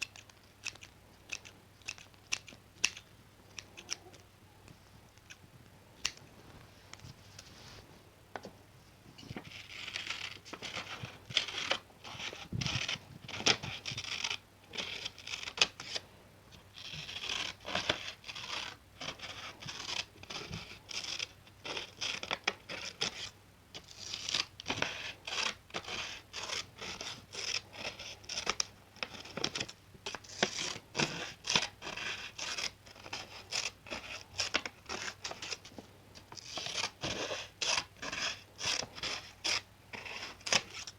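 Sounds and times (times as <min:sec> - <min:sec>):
scissors snipping: 0:00.0 - 0:04.2.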